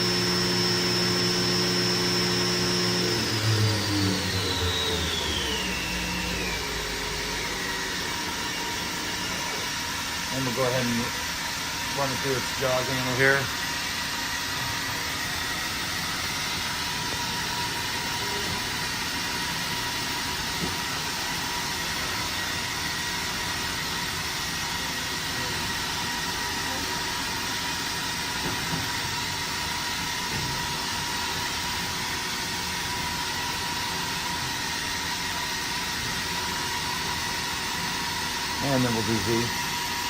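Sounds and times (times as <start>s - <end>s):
faint machine whine: 0.0s - 13.9s
machine mechanical hum: 0.0s - 40.0s.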